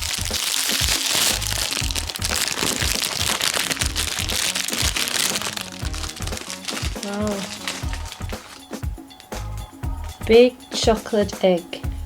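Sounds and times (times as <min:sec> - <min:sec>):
foil wrapper crinkling: 0:00.0 - 0:09.4
background music: 0:00.0 - 0:12.0.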